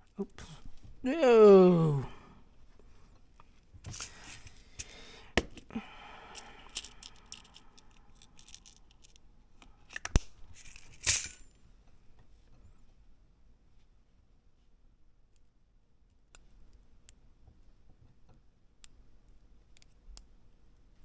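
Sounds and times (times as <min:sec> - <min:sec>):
plastic parts rustling: 0:03.9 - 0:05.7, 0:06.3 - 0:09.2, 0:09.9 - 0:11.4
plastic parts clicking: 0:06.4 - 0:09.2.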